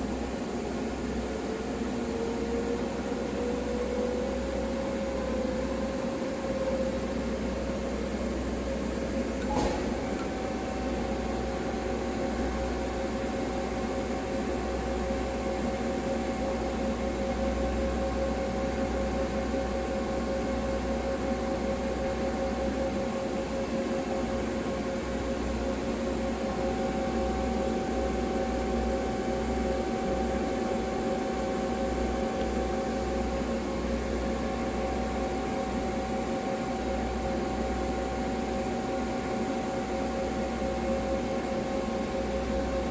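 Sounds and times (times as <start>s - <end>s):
machine hum with fan: 0.0s - 42.9s
short click: 9.4s - 10.4s.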